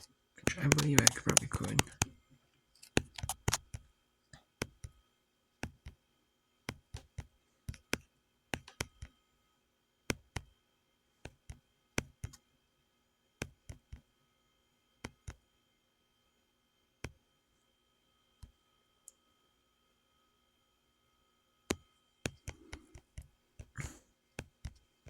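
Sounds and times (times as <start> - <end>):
mouse or keyboard clicking: 0.0 - 2.1, 2.8 - 3.8, 8.6 - 9.1, 21.7 - 24.8.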